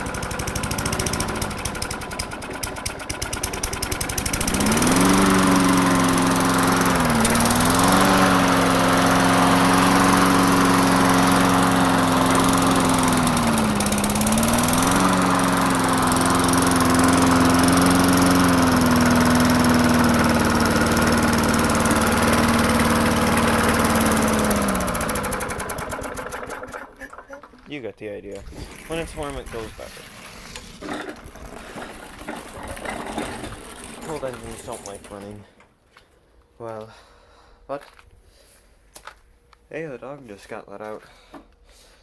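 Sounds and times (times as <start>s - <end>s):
lawn mower engine running: 0.0s - 27.7s, 30.8s - 35.4s.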